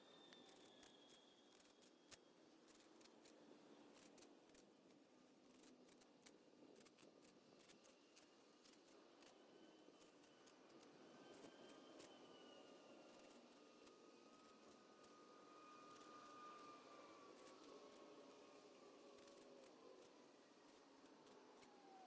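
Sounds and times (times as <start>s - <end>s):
faint irregular clicks: 1.5s - 9.4s, 19.2s - 22.0s.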